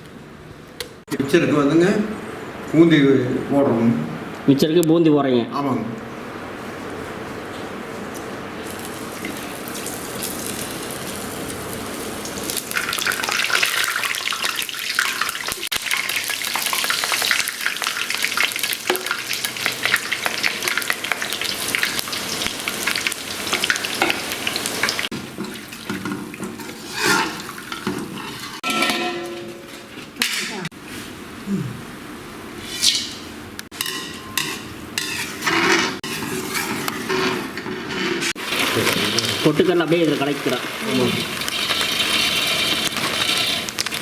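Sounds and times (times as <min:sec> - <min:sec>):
batter sizzling in hot oil: 0:08.6 - 0:28.6, 0:38.3 - 0:44.0.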